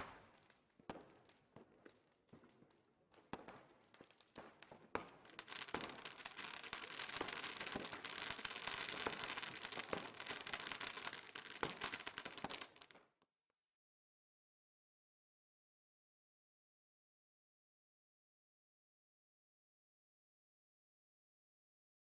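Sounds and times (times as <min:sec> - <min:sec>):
fireworks crackling and popping: 0:00.0 - 0:13.0.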